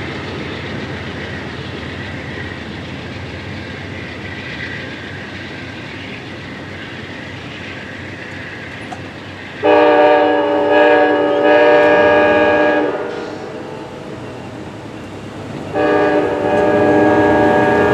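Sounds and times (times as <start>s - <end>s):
train rolling past: 0.0s - 17.9s
locomotive horn blast: 9.6s - 13.6s, 15.7s - 17.9s.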